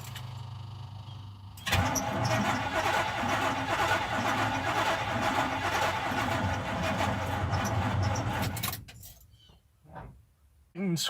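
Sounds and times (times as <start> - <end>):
starter motor cranking engine: 1.6 - 8.6.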